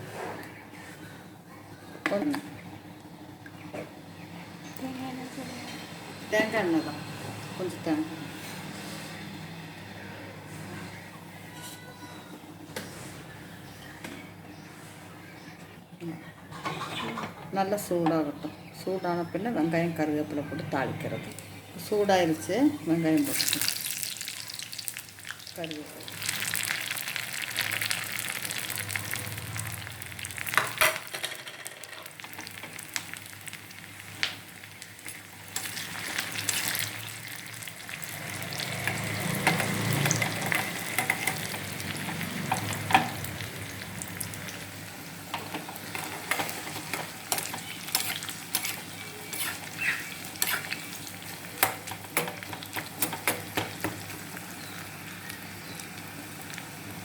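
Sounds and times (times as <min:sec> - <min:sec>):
onions sizzling in oil: 0:21.8 - 0:57.0
sharp clicks in sizzle: 0:29.8 - 0:38.0, 0:38.6 - 0:43.4, 0:45.3 - 0:57.0.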